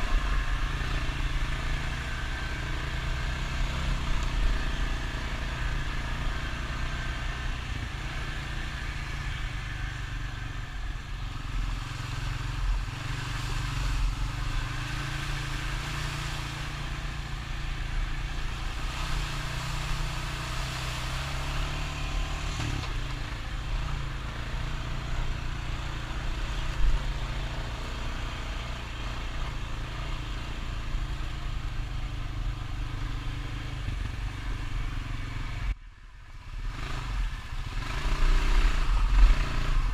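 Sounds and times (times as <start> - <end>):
atv engine running: 0.0 - 35.8, 36.5 - 39.9.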